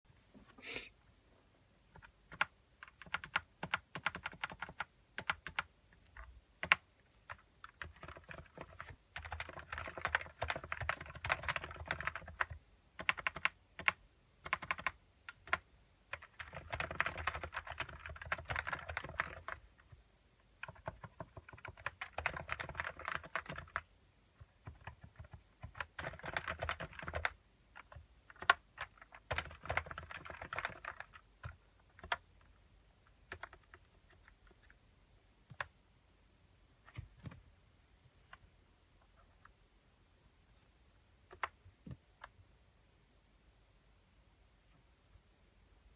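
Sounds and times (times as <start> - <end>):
typing on a keyboard: 1.9 - 20.0, 20.6 - 32.5, 33.3 - 34.8, 41.3 - 42.4.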